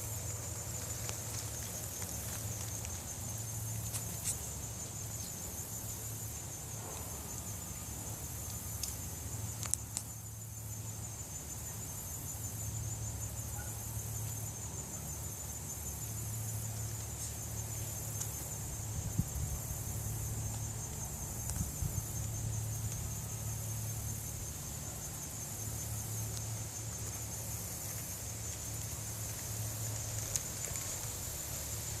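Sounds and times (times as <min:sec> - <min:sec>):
insects trilling: 0:00.0 - 0:32.0
faint clicks: 0:09.6 - 0:10.1, 0:30.2 - 0:31.2.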